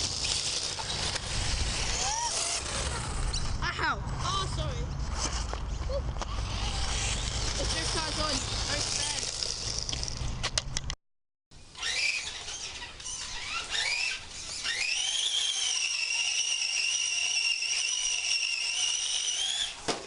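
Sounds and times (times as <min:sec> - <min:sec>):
toy car motor whining: 0:00.0 - 0:03.6, 0:06.1 - 0:10.3, 0:11.6 - 0:19.8.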